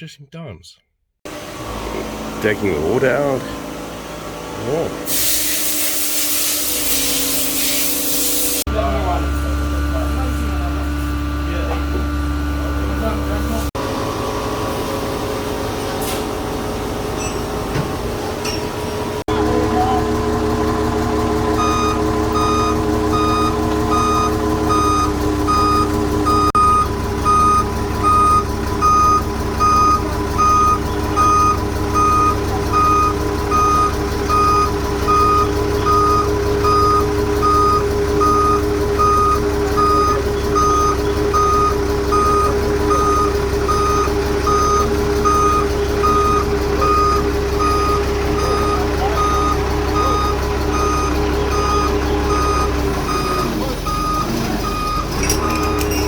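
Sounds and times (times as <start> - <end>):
engine running: 1.3 - 5.1, 8.0 - 56.0
reversing alarm beeping: 21.6 - 56.0.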